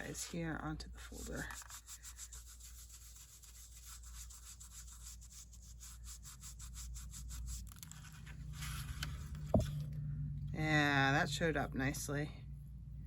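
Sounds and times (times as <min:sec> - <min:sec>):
quick rubbing strokes: 0:00.0 - 0:09.2.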